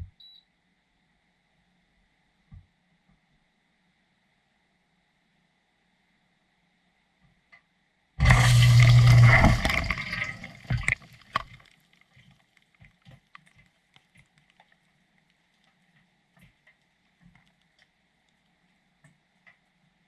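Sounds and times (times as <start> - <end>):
low steady hum: 8.2 - 11.6
water rushing: 8.2 - 11.6
water dripping: 8.2 - 12.3.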